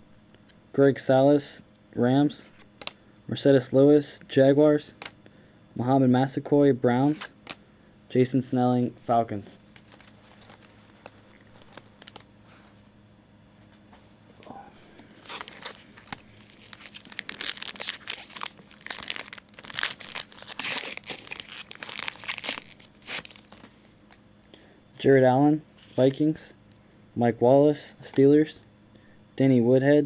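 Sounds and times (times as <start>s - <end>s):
foil wrapper crinkling and tearing: 9.7s - 12.3s, 15.0s - 24.2s.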